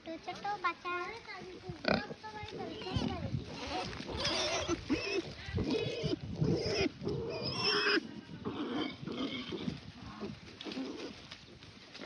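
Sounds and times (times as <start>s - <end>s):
pigs squealing and grunting: 1.8s - 11.2s.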